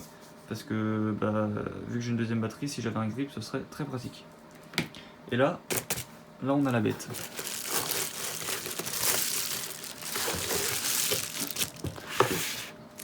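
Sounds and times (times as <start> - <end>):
packaging crinkling and rustling: 5.7 - 13.0.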